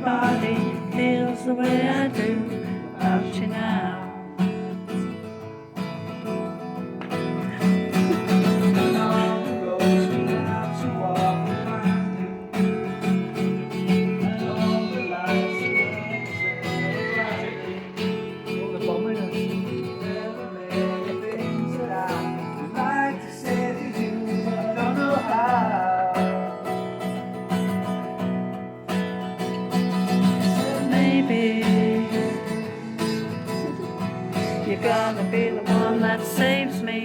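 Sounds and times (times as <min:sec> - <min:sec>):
person singing: 0:00.0 - 0:04.5, 0:07.5 - 0:12.5, 0:14.0 - 0:26.9, 0:30.2 - 0:37.0
acoustic guitar strumming chords: 0:00.0 - 0:37.0.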